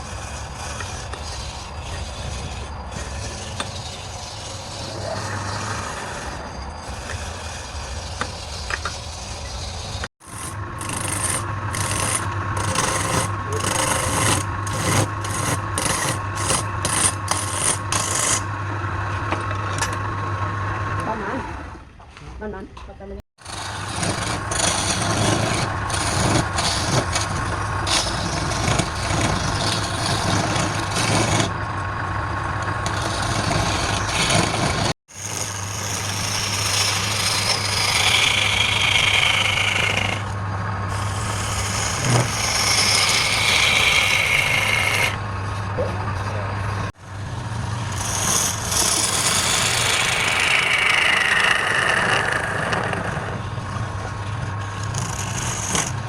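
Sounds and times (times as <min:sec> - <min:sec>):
wood lathe motor hum: 0:00.0 - 0:21.2, 0:23.4 - 0:56.0
turning tool scraping spinning wood: 0:00.0 - 0:21.8, 0:23.4 - 0:56.0.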